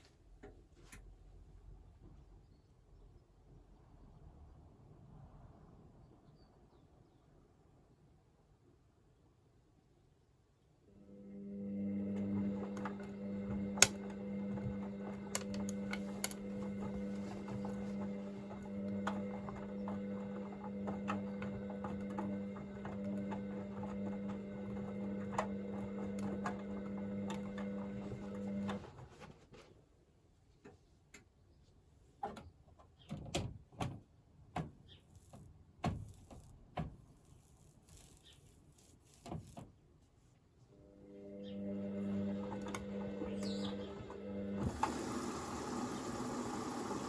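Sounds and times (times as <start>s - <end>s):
washing machine drum motor hum: 11.4s - 29.0s, 41.3s - 47.0s.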